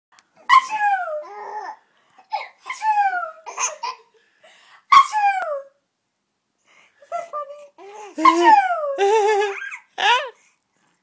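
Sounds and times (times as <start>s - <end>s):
toddler laughing: 8.2s - 10.4s.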